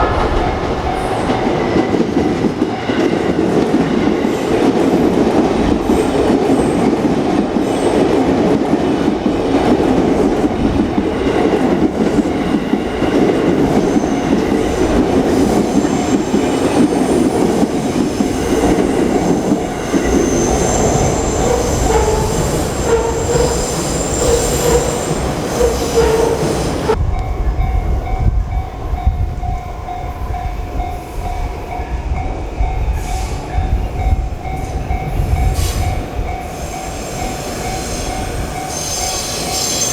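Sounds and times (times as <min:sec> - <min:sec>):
train wheels clattering on rails: 0:00.0 - 0:39.9.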